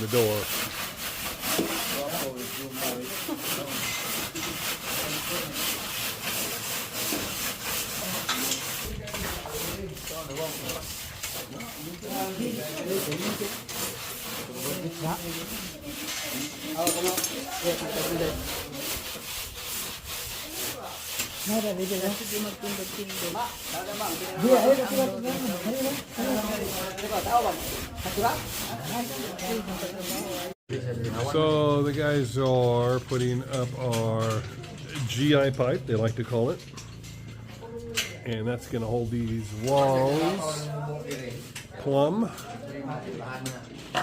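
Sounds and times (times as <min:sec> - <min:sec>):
hand saw cutting panel: 0:00.0 - 0:30.6
workers' voices: 0:00.0 - 0:44.0.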